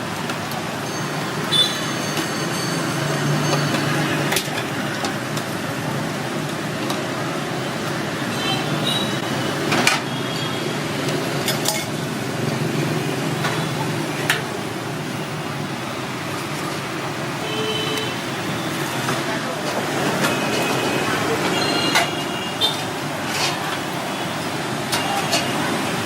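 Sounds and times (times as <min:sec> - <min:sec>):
traffic noise: 0:00.0 - 0:26.0
dishes clinking and knocking: 0:11.4 - 0:12.0.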